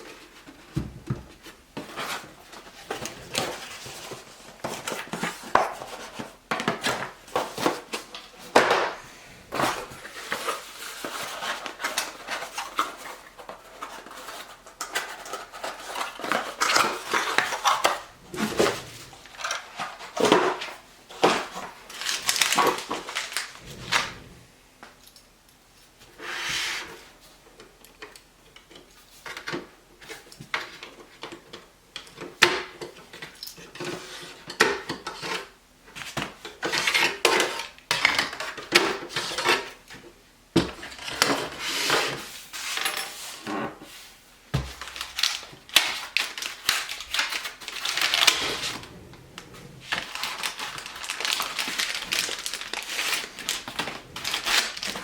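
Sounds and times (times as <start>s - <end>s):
sliding or rustling: 6.9s - 13.2s, 15.1s - 24.6s, 46.1s - 55.0s.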